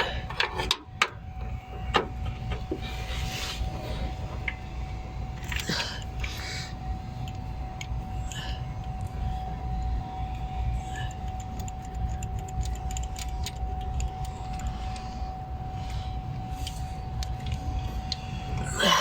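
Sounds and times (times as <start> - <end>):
faint steady whine: 0.0 - 19.0
steady low rumble: 0.0 - 19.0
metallic clicks of socket wrench: 11.2 - 15.0.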